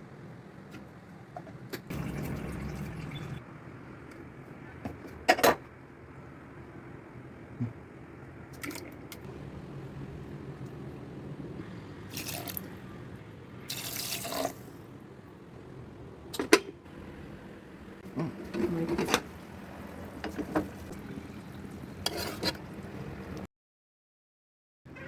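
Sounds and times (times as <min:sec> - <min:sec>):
kitchen water running: 0:01.9 - 0:03.4, 0:08.6 - 0:12.8, 0:13.5 - 0:14.9, 0:16.9 - 0:23.5.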